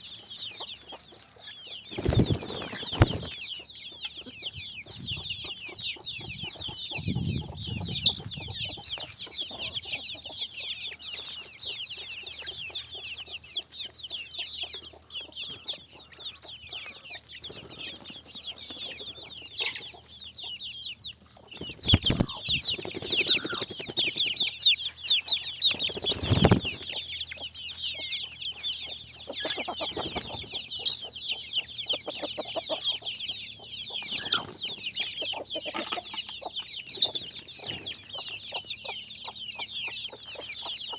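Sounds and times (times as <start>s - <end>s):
chickens clucking: 0.0s - 40.9s.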